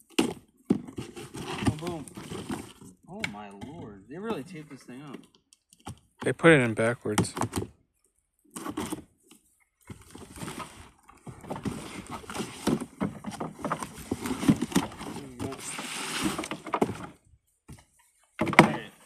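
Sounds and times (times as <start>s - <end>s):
cardboard box rustling and scraping: 0.4s - 3.0s, 8.6s - 18.9s.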